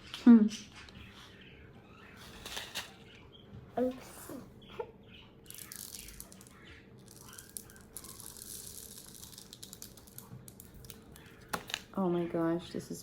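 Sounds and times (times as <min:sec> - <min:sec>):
plastic piping bag crinkling: 0:05.5 - 0:12.0.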